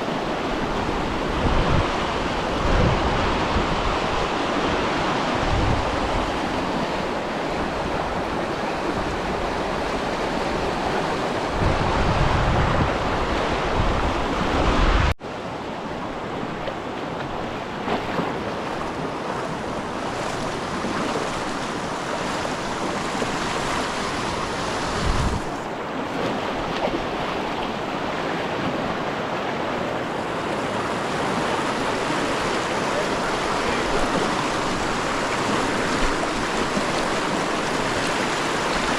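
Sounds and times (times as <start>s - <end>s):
wind buffeting microphone: 0.0s - 15.2s, 18.3s - 25.8s
water rushing like surf: 0.0s - 38.9s.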